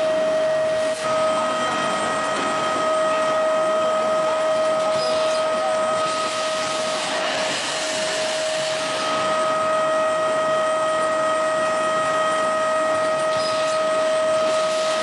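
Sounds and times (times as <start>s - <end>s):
constant machine whine: 0.0s - 15.0s
machine rushing noise: 4.5s - 10.2s.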